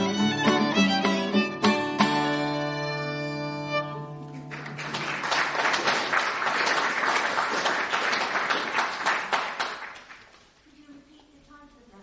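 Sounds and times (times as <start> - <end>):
audience applauding: 4.2 - 10.6.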